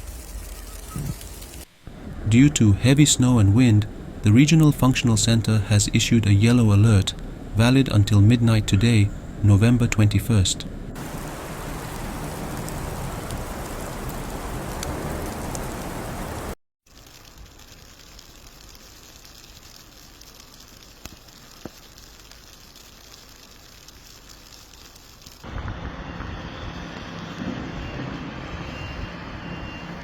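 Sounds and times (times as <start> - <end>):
hiss of rain falling: 0.0 - 26.0
faint ticks: 11.3 - 25.4.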